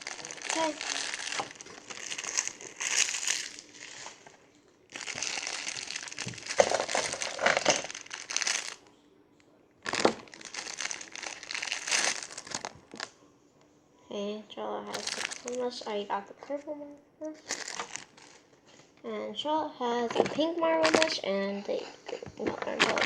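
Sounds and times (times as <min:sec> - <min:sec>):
fidget toys crinkling and rustling: 0:00.0 - 0:08.9, 0:09.8 - 0:13.1, 0:14.9 - 0:16.0, 0:17.4 - 0:18.6, 0:20.0 - 0:23.0.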